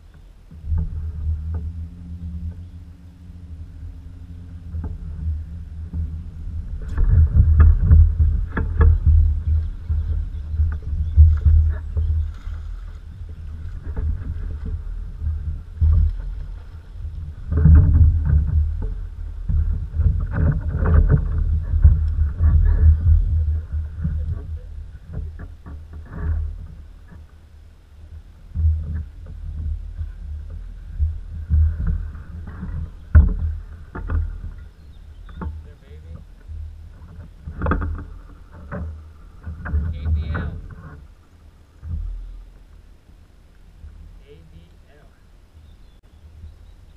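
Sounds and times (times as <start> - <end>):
canoe buffeting rumble: 0.0 - 46.9
water splashing: 2.8 - 25.4.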